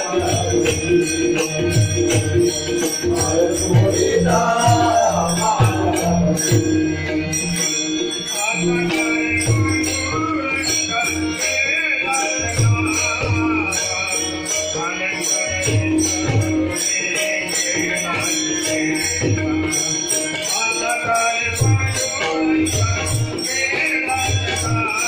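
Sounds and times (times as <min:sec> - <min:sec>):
drum strokes: 0:00.0 - 0:07.0
jingling hand cymbals: 0:00.0 - 0:25.0.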